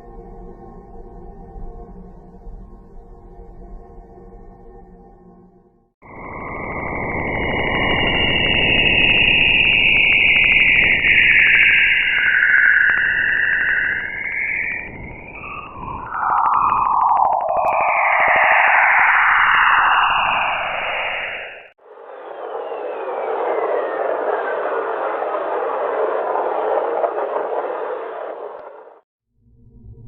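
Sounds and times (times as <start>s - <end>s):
sweeping whistling tones: 6.0s - 29.0s.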